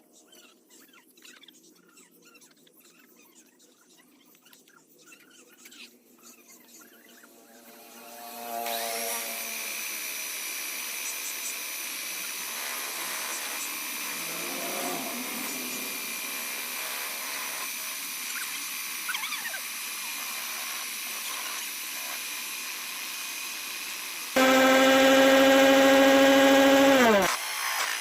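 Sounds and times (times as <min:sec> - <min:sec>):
power tool motor whining: 0:07.3 - 0:28.0.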